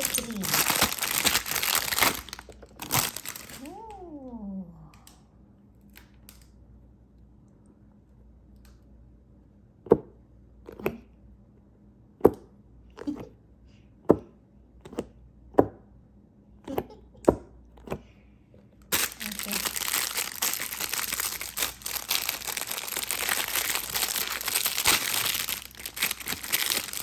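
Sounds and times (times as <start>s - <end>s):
plastic toys clicking: 0.0s - 3.7s.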